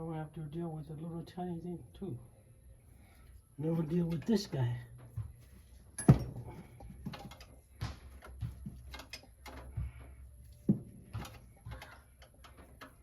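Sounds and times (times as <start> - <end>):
metal tools clicking and knocking: 5.9 - 9.8, 11.1 - 13.0.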